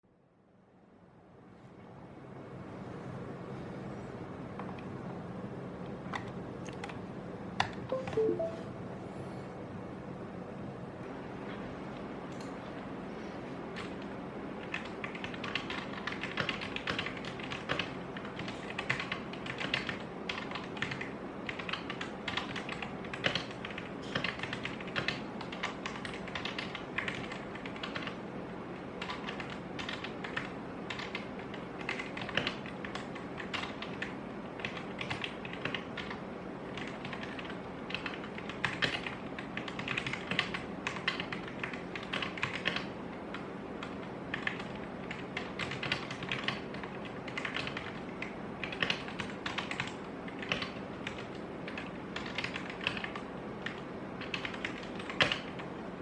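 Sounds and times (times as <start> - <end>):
mechanical keyboard typing: 7.6 - 8.6, 14.6 - 28.2, 28.8 - 55.7.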